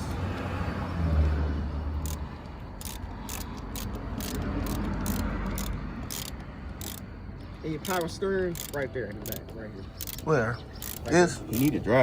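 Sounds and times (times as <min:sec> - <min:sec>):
sharp irregular clicks: 0:01.9 - 0:11.8.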